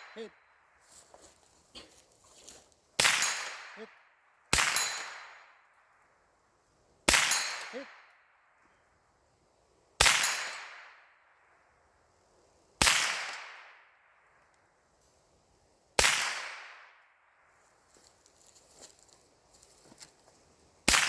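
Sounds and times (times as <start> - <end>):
rifle shots with echo: 3.0 - 5.6, 7.1 - 8.1, 10.0 - 11.0, 12.8 - 13.8, 16.0 - 17.0.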